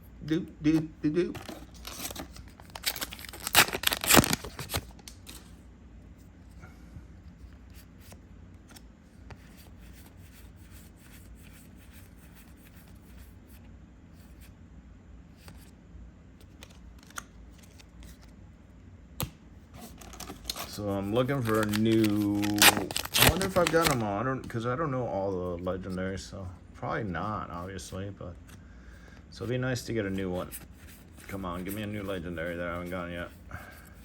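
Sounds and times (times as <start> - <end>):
foil pack tearing open: 1.4 - 5.4, 19.9 - 24.0
cards flicking and sliding: 20.2 - 24.1.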